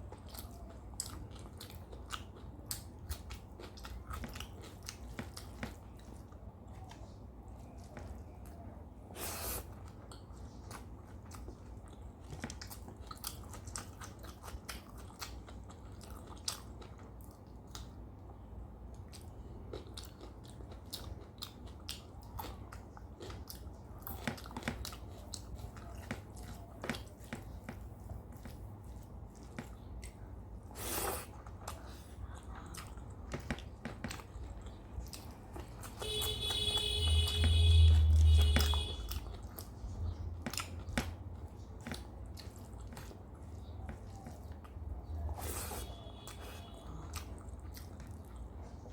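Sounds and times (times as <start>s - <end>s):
person chewing food: 0.0s - 48.9s.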